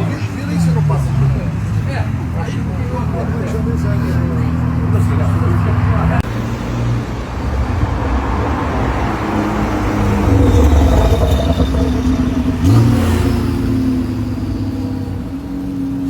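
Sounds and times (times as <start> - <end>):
car engine revving: 0.0 - 16.0.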